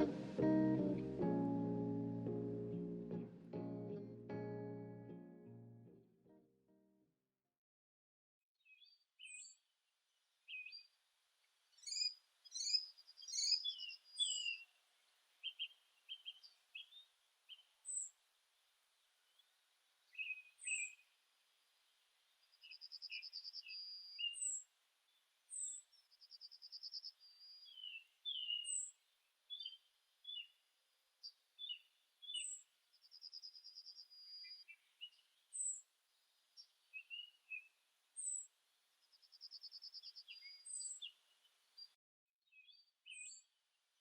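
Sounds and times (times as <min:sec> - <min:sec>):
birds chirping: 0:00.0 - 0:03.3, 0:11.8 - 0:14.7, 0:25.5 - 0:28.9
songbird trilling: 0:11.8 - 0:14.6.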